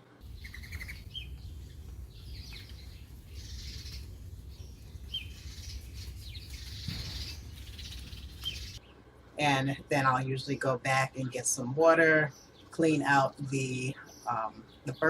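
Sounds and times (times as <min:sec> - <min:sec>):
steady low rumble: 0:00.0 - 0:09.3
high bird chirps: 0:00.2 - 0:08.8.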